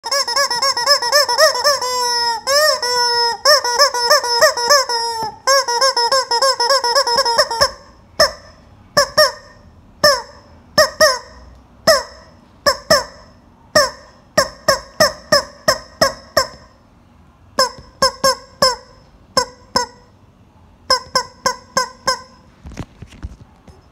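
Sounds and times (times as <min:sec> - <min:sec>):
chicken squawking: 0:00.0 - 0:16.7.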